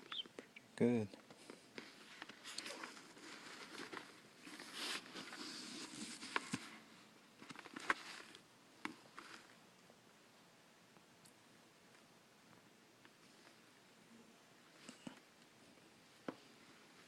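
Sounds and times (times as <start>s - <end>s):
soft rustling: 1.2s - 9.6s.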